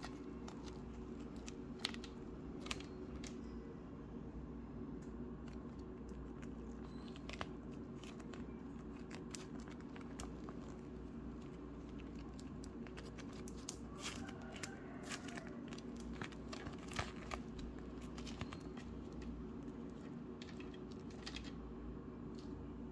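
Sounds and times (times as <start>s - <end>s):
slime crackling and tearing: 6.2s - 19.2s.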